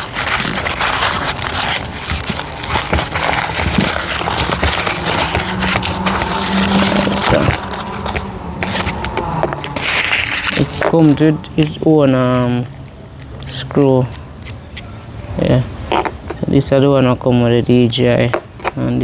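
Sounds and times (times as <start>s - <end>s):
packaging rustling and crinkling: 0.0s - 12.5s.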